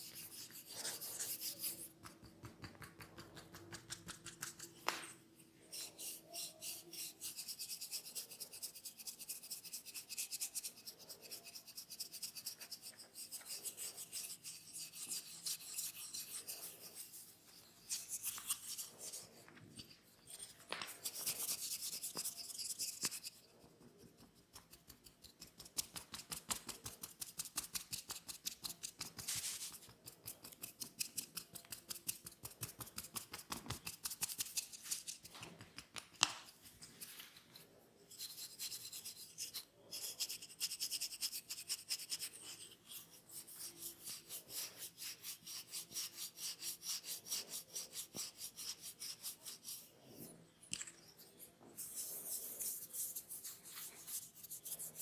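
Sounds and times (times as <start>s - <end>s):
hands rubbing skin and hair: 0.0s - 6.6s, 24.8s - 37.4s.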